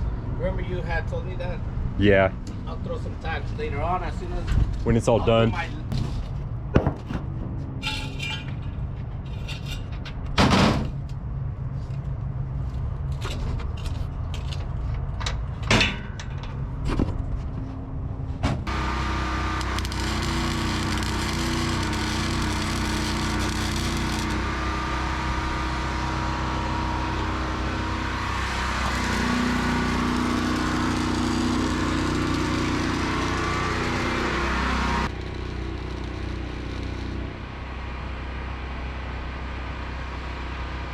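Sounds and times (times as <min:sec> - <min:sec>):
power tool or welding noise: 0:18.7 - 0:38.4.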